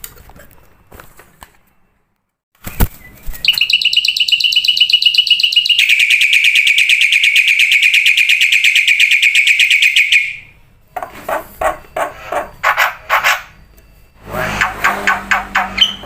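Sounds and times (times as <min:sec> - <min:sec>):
songbird trill: 0:02.6 - 0:10.6, 0:14.6 - 0:16.0
lower pulsed bird calls: 0:02.7 - 0:10.6, 0:12.6 - 0:16.0.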